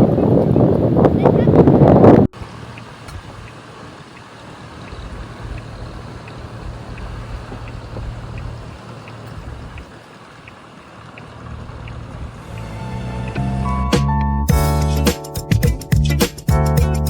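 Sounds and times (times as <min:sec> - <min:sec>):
water lapping at the shore: 0:02.4 - 0:12.7
faint repeating tick: 0:04.2 - 0:10.6
steady low rumble: 0:04.6 - 0:10.0, 0:11.3 - 0:14.7.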